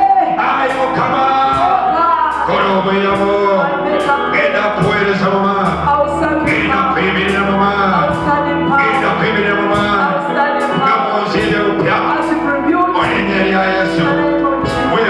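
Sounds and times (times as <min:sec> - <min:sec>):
band playing held chords: 0:00.0 - 0:15.0
man singing: 0:00.0 - 0:15.0.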